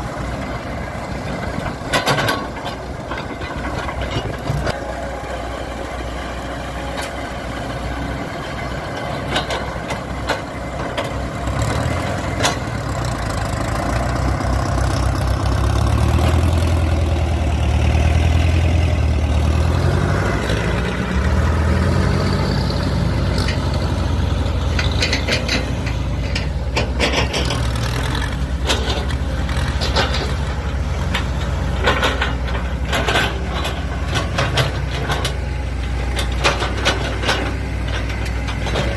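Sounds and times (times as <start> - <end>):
heavy machinery engine running: 0.0 - 38.9
metallic clanks and knocks: 1.3 - 4.8, 8.4 - 14.1, 23.2 - 38.9.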